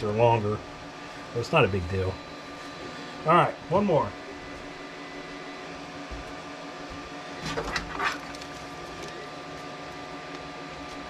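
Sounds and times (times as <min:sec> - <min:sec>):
room hum: 0:00.0 - 0:11.0
clattering handling noises: 0:07.4 - 0:09.2.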